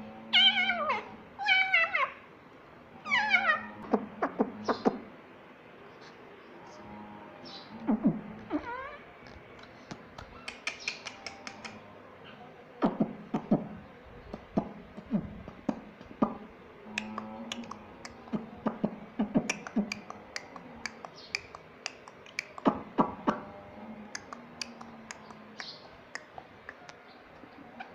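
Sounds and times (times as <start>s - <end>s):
parrot beak clicks: 9.6s - 11.8s, 17.0s - 23.2s, 24.2s - 27.0s.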